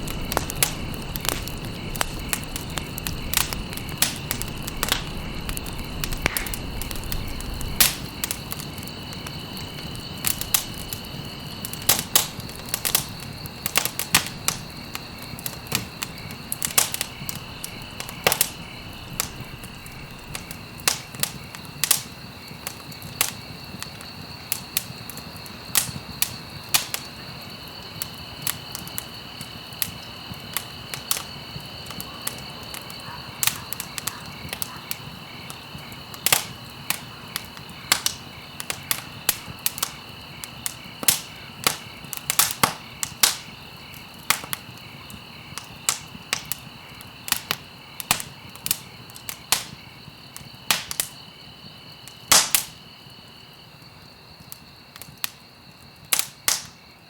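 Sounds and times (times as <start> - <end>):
campfire crackling: 0.0 - 57.0.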